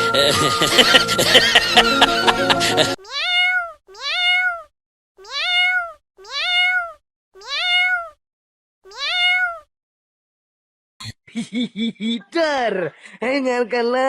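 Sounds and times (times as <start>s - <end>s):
cat meowing: 3.0s - 8.2s, 8.9s - 9.7s.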